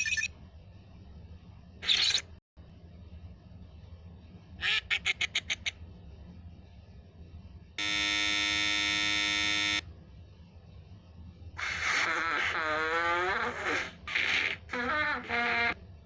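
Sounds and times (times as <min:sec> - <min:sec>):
loud steady buzzer tone: 0:07.8 - 0:09.9.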